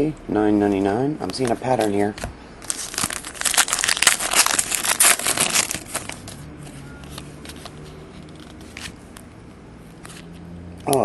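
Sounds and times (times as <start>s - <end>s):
foil wrapper tearing and crinkling: 2.6s - 6.4s.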